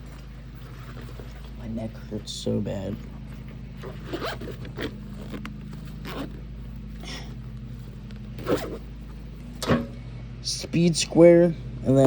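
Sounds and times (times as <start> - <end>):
steady low hum: 0.0 - 12.0
zipper on a tool bag: 3.8 - 6.5, 8.4 - 8.9.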